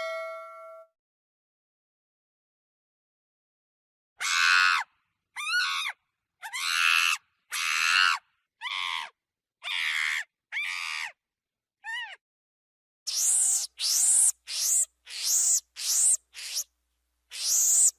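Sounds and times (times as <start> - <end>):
monkey screeching: 4.2 - 4.8, 5.4 - 11.2, 13.1 - 16.7, 17.3 - 17.9.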